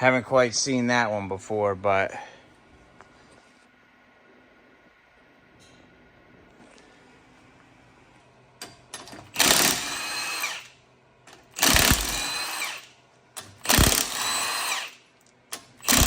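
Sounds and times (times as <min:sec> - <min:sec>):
power tool motor: 0:09.3 - 0:10.7, 0:11.6 - 0:12.9, 0:13.6 - 0:15.0.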